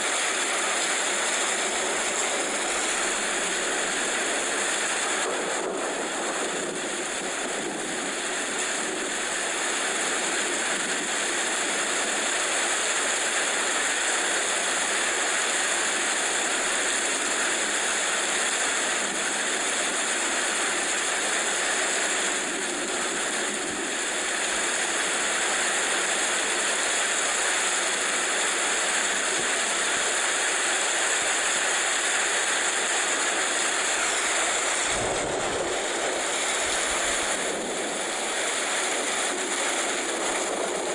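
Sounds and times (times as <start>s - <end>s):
heavy rain hissing: 1.2s - 5.1s, 33.8s - 37.9s.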